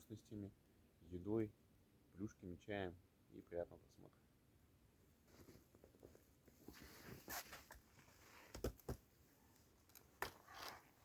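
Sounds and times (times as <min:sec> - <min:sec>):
soft rustle: 0:05.0 - 0:11.0.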